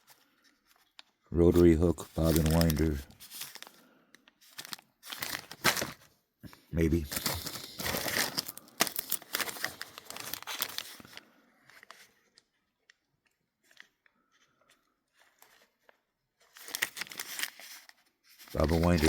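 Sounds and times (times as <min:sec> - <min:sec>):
packaging crinkling and rustling: 0:00.0 - 0:06.1, 0:06.8 - 0:12.6, 0:13.6 - 0:19.0.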